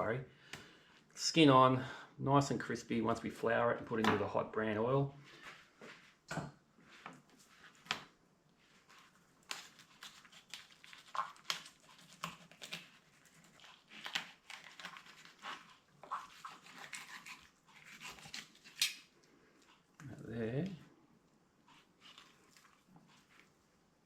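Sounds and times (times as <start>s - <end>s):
knife cutting and scraping fish: 8.6s - 19.1s, 21.7s - 23.5s.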